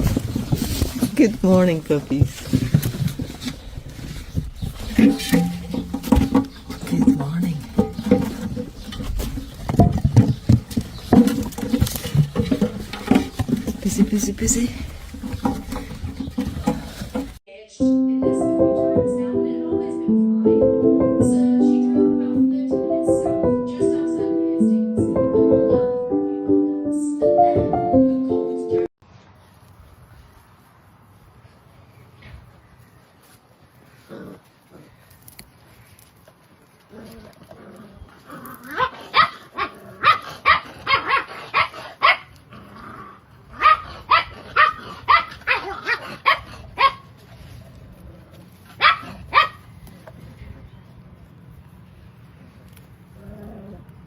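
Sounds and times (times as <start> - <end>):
light piano tune over a beat: 17.8 - 28.9
dog barking: 38.8 - 42.3, 43.6 - 47.0, 48.8 - 49.6.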